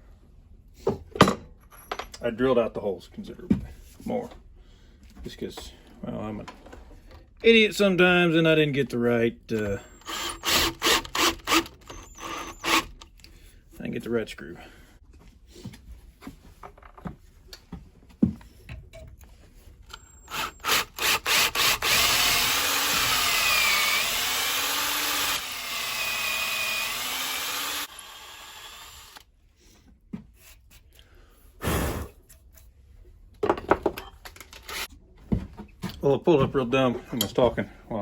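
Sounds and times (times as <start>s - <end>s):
power drill whirring under load: 9.9s - 13.0s, 20.0s - 29.2s.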